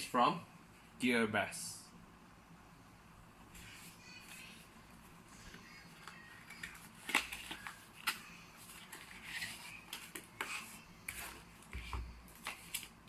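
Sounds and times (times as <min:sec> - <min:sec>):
packaging rustling: 0:06.0 - 0:10.3.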